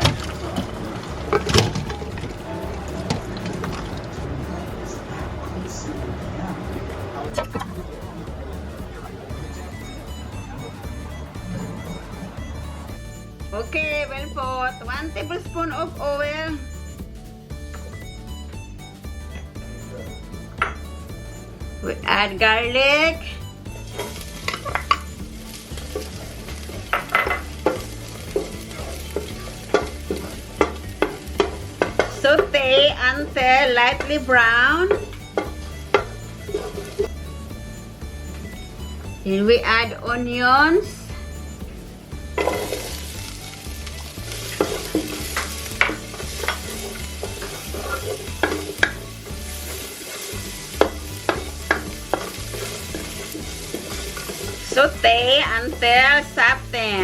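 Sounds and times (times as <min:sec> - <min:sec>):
garlic sizzling in oil: 0:00.0 - 0:05.3, 0:19.1 - 0:39.2, 0:40.4 - 0:57.0
utensil scraping and tapping pan: 0:23.9 - 0:37.1, 0:42.4 - 0:56.0.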